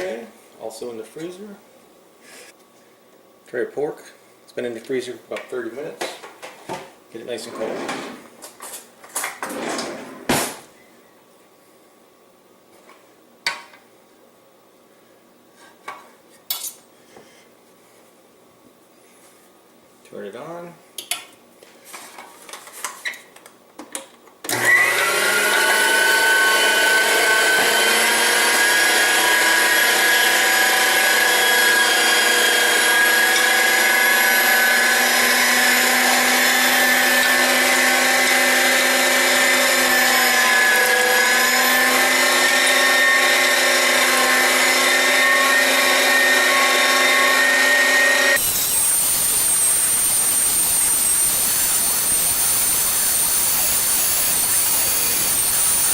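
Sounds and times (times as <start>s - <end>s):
electric motor whine: 24.5s - 55.9s.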